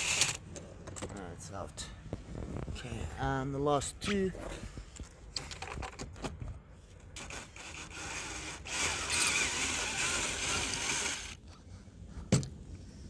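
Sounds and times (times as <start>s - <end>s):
cordless drill running: 7.2s - 11.4s.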